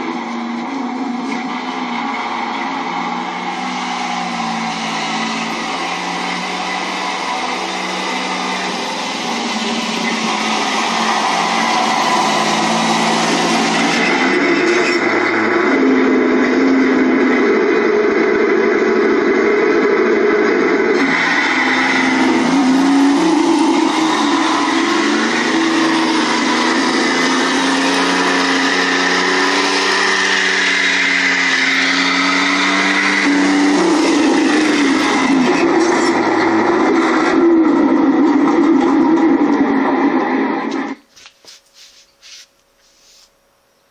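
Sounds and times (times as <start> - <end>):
model tank engine sound: 0.0 - 41.0
hiss: 41.5 - 43.3.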